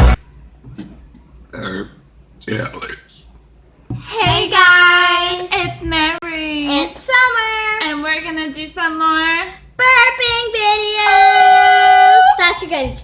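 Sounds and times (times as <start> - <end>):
girl singing: 4.0 - 7.2, 9.8 - 13.0.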